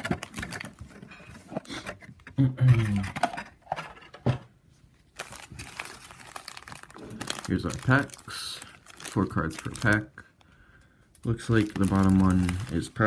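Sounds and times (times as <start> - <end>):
cardboard and foil rustling: 0.0 - 2.0, 5.1 - 10.1, 11.2 - 13.0.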